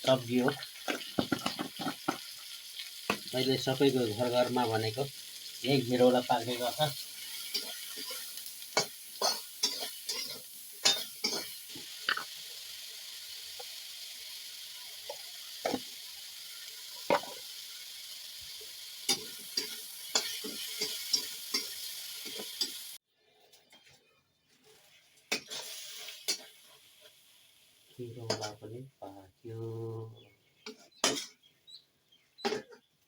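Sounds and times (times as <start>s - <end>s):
vegetables sizzling in oil: 0.0s - 23.0s, 24.6s - 28.7s.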